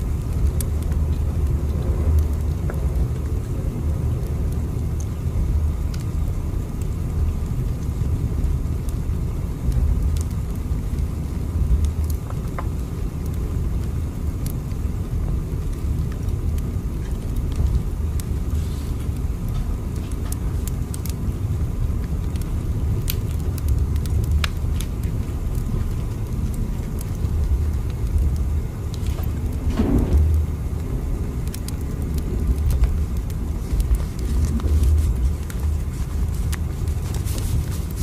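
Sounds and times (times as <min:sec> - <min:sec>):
train rumbling in motion: 0:28.9 - 0:36.3.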